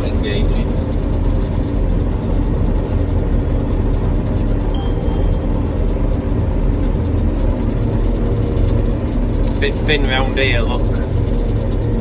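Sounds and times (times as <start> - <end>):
combine harvester engine drone: 0.0 - 12.0
faint short high tone: 4.7 - 6.2.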